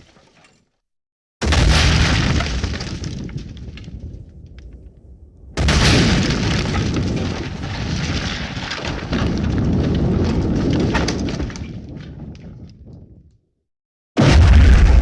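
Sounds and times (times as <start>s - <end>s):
crackling and sharp cracks: 1.4s - 13.0s
explosion blast and rumble: 1.4s - 13.3s, 14.2s - 15.0s.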